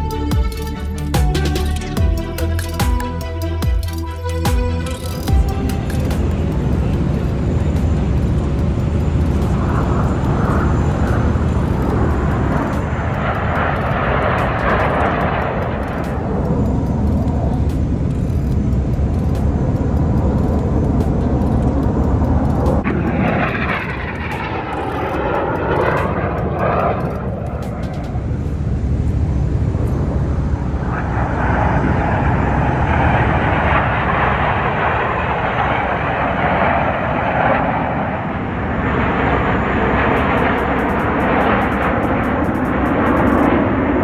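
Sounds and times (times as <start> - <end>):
aircraft flying past: 22.7 - 44.0.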